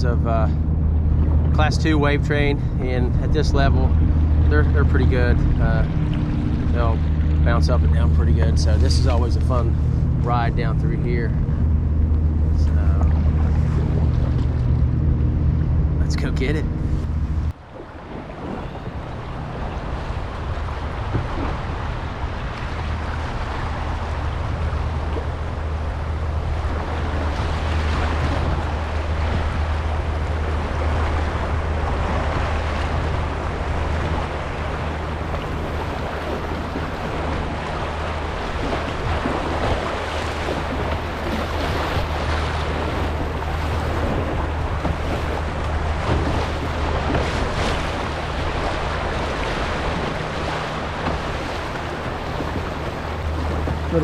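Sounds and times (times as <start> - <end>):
wind rumble on microphone: 0.0 - 54.0
rushing whitewater: 18.2 - 54.0.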